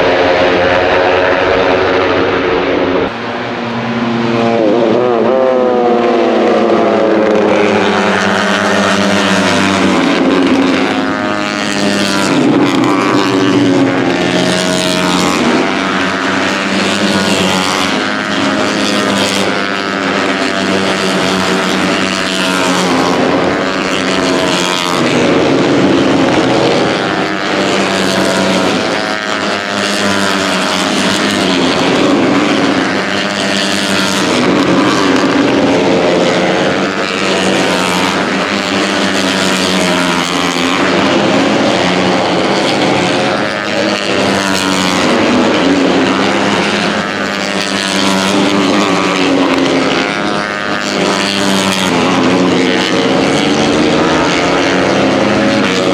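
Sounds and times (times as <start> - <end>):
motorcycle engines at high revs: 0.0 - 55.9.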